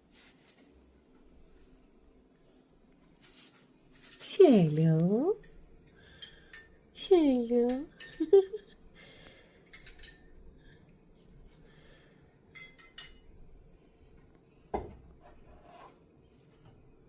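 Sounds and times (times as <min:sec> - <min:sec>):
light clinks and taps: 0:05.4 - 0:06.8, 0:07.6 - 0:08.4, 0:09.6 - 0:10.5.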